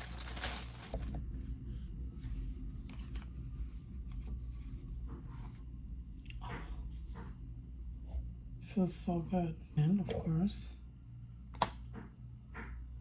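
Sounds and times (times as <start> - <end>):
plastic phone case rustle: 0.0 - 1.2.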